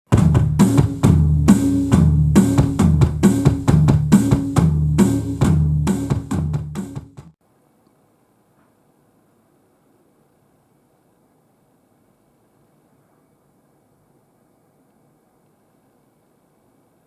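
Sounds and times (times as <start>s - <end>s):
bass line: 0.1s - 7.3s
drum kit playing: 0.1s - 7.4s.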